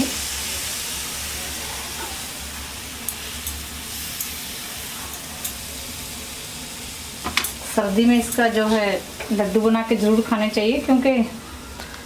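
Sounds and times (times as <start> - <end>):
sizzling hiss in pan: 0.0 - 12.0.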